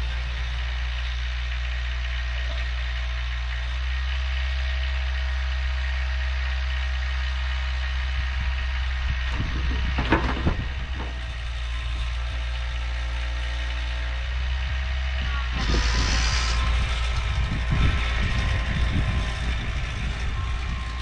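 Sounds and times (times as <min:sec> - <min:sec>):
atv engine idling: 0:00.0 - 0:10.0
clatter of knocks: 0:09.3 - 0:11.3.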